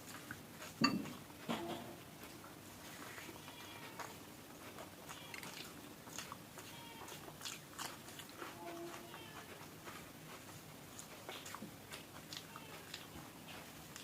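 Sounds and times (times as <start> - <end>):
soft crunch of food: 2.2 - 14.0
person chewing food: 3.9 - 14.0
wet lip-smacking: 7.1 - 8.4.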